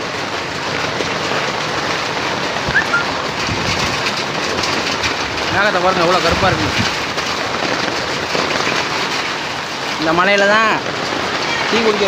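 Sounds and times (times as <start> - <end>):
steady rain falling: 0.0 - 12.0
short high chirp: 2.7 - 3.1.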